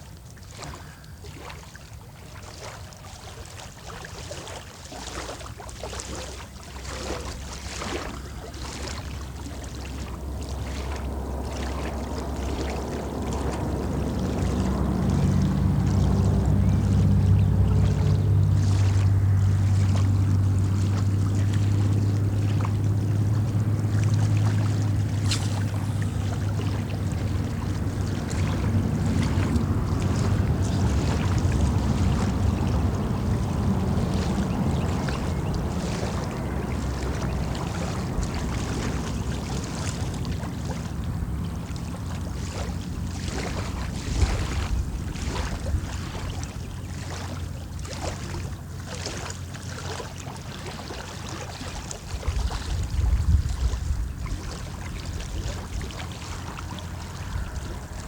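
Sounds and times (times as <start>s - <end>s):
water rushing: 0.0s - 58.0s
wind buffeting microphone: 6.4s - 58.0s
low hum: 9.2s - 46.7s.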